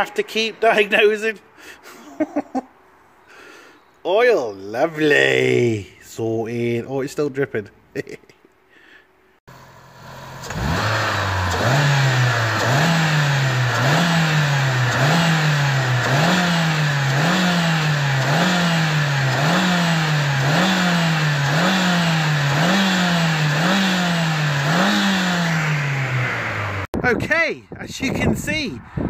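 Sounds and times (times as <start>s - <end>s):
diesel engine surging: 9.5s - 26.9s.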